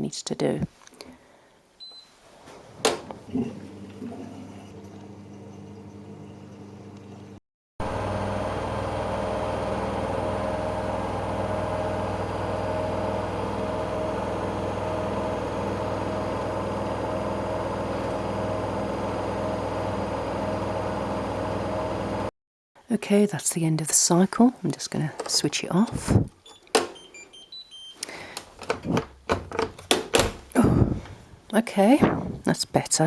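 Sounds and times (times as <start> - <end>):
washing machine humming: 2.6 - 22.3, 25.5 - 31.2.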